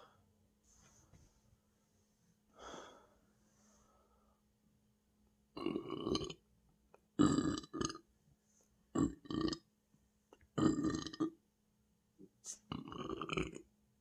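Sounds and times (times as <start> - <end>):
person belching loudly: 5.6 - 6.4, 7.2 - 8.0, 9.0 - 9.6, 10.6 - 11.4, 12.7 - 13.7.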